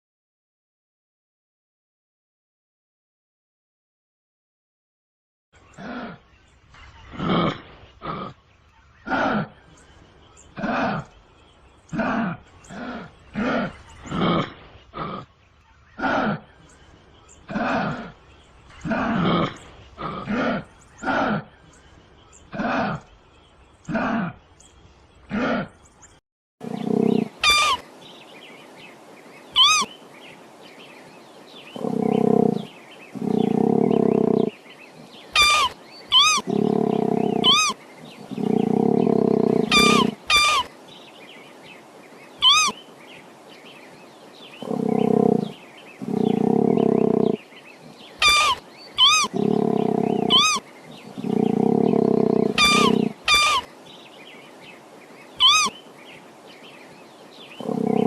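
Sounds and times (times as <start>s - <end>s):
low rough roaring calls: 5.6s - 24.6s, 26.6s - 28.0s, 29.5s - 58.0s
high-pitched chirping calls: 27.0s - 27.8s, 29.5s - 29.9s, 33.2s - 40.7s, 42.4s - 42.8s, 44.6s - 53.7s, 55.4s - 55.9s.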